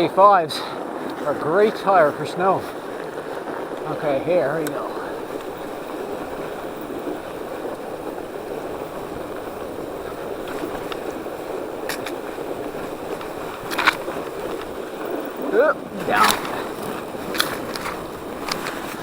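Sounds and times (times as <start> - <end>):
tyres rushing on packed snow: 0.0 - 19.0.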